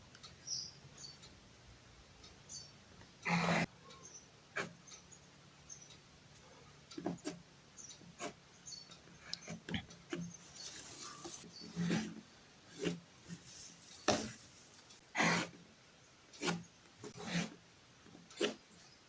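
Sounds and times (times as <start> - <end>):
drawing tool scratching paper: 3.3 - 3.7, 8.1 - 8.4, 9.3 - 15.6, 16.4 - 17.6, 18.4 - 18.9.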